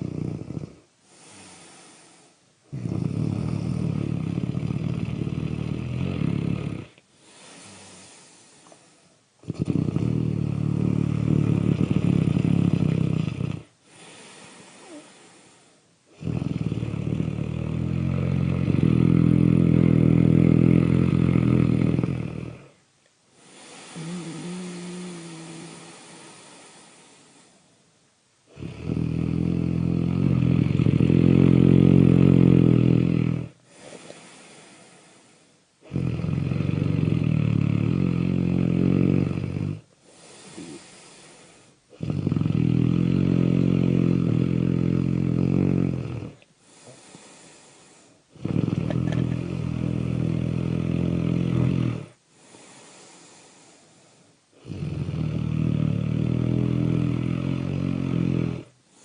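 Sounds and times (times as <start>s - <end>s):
loud snoring: 0.0s - 22.8s, 23.4s - 27.6s, 28.5s - 59.0s
breathy exhales: 13.9s - 15.9s, 33.7s - 35.6s, 40.0s - 41.8s.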